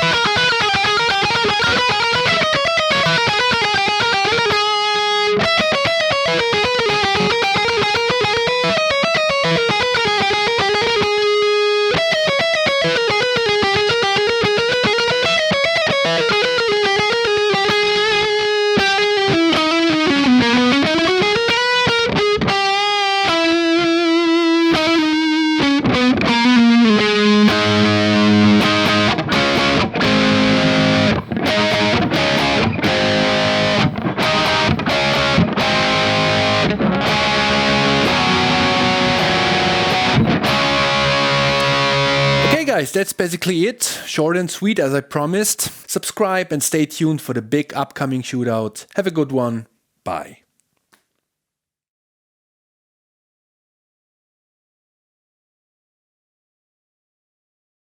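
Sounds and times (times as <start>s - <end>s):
distorted electric guitar: 0.0s - 42.7s.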